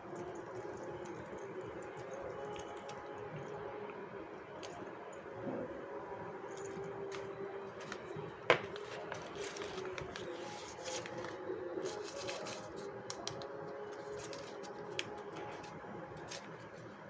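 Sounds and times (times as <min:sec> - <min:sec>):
packaging clicks and rustling: 0:06.6 - 0:16.9.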